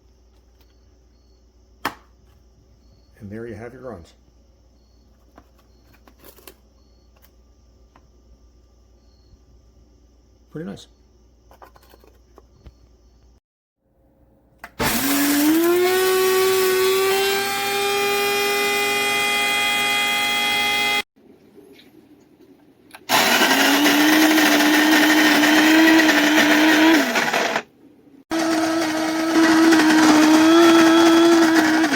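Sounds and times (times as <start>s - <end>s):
coffee grinder motor whining: 14.8s - 21.0s, 23.1s - 27.6s, 28.3s - 31.9s.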